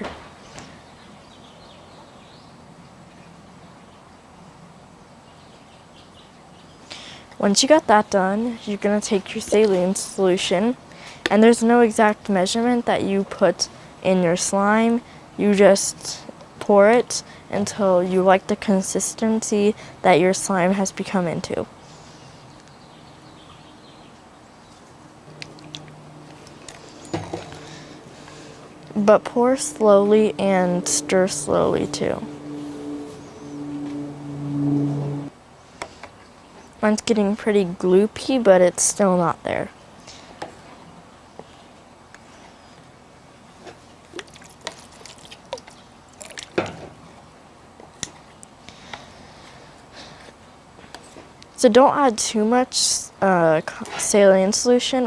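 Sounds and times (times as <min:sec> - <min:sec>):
low hum: 0:25.0 - 0:35.3.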